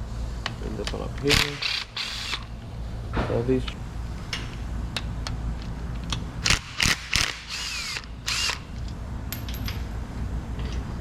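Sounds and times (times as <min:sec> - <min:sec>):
steady low hum: 0:00.0 - 0:11.0
metal engine parts clinking: 0:09.3 - 0:09.9.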